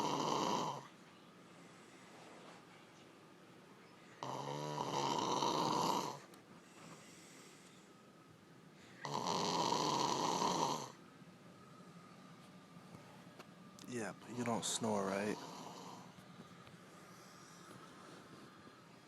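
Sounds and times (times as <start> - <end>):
woman snoring: 0.0 - 0.9, 4.2 - 6.3, 9.0 - 11.0, 15.4 - 16.2.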